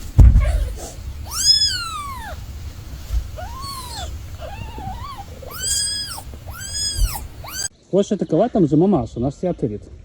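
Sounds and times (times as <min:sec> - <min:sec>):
cat meowing: 0:00.2 - 0:07.7.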